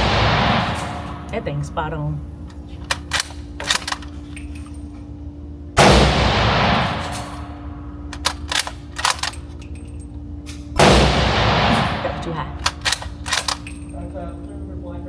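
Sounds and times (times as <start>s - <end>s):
rifle shot: 0.0s - 1.6s, 5.8s - 9.3s, 10.8s - 13.6s.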